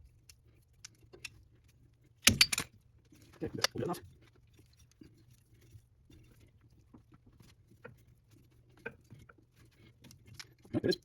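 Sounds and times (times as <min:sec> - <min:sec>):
metal part being handled: 0:02.2 - 0:02.7.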